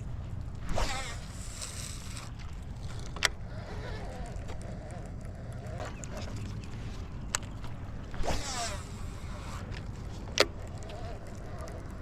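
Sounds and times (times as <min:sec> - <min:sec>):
fishing reel whirring: 0:00.6 - 0:07.0, 0:07.9 - 0:12.0.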